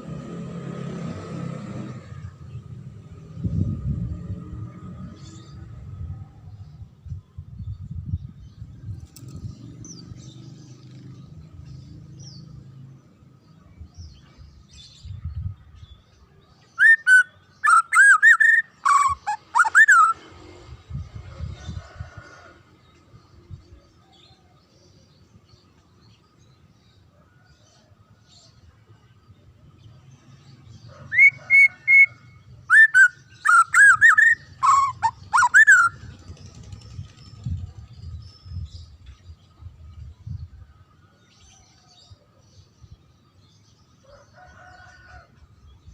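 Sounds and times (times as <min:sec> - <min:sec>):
low rumble: 0:02.8 - 0:10.3
bird whistling song: 0:16.8 - 0:20.2, 0:31.1 - 0:36.2.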